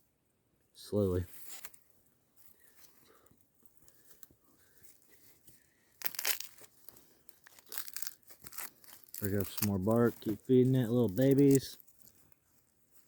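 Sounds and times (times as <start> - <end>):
bark tinder crumpled and torn by hand: 5.9 - 12.2.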